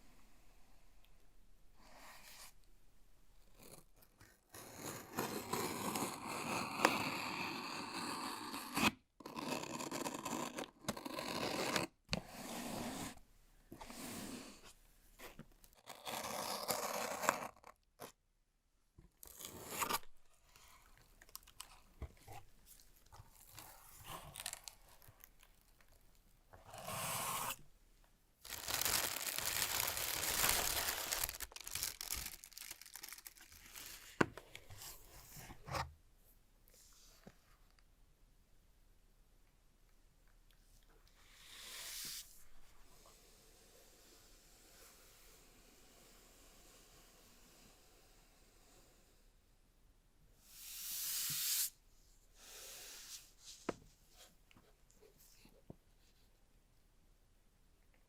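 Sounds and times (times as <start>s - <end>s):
paper and plastic tearing: 28.5s - 34.1s.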